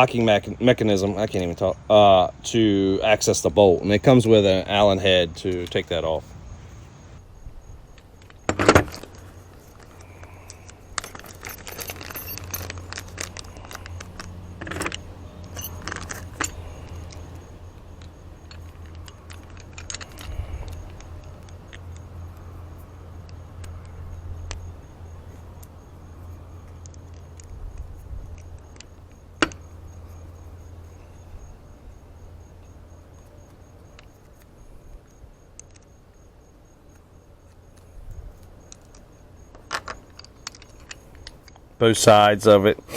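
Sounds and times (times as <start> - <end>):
metal tools clinking: 8.7 - 21.8.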